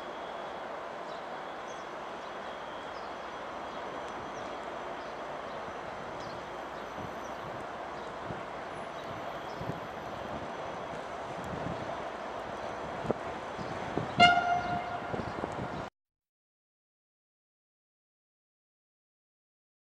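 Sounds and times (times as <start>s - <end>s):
rail vehicle running along track: 0.0s - 15.9s.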